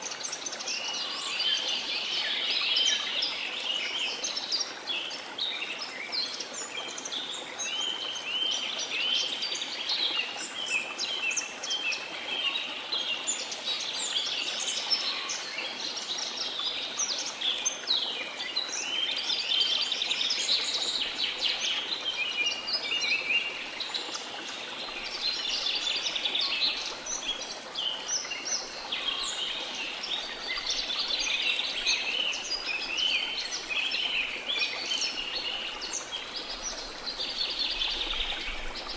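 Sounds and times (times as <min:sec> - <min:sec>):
falling water rushing: 0:20.2 - 0:38.9.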